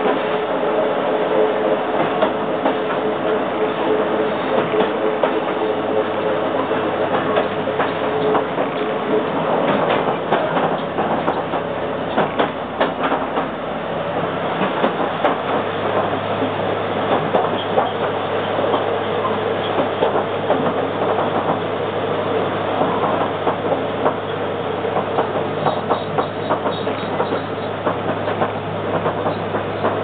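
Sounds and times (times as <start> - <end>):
train interior hum: 0.0 - 30.0
train rumble: 0.0 - 30.0
wheels clicking on track: 6.2 - 21.8, 22.4 - 30.0.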